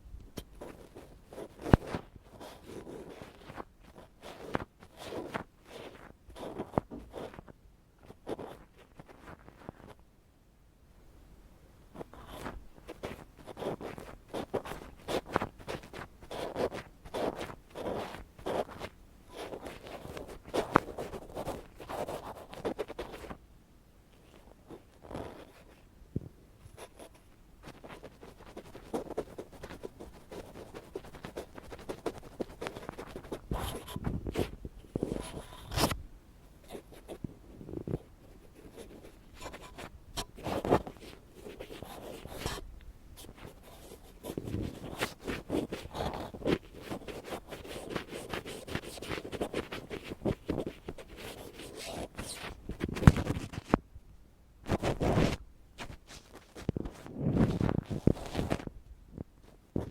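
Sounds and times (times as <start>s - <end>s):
ear pick scratching: 0.4s - 10.0s, 12.0s - 23.4s, 24.2s - 25.8s, 26.7s - 36.0s, 36.6s - 42.6s, 43.2s - 53.8s, 54.7s - 58.7s.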